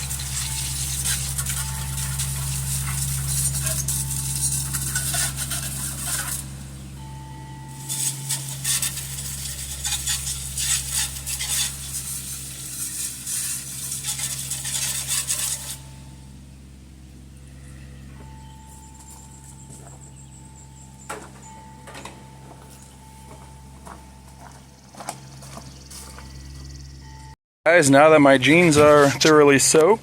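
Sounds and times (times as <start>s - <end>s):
water spraying against engine: 0.0s - 17.5s
steady low hum: 0.0s - 30.0s.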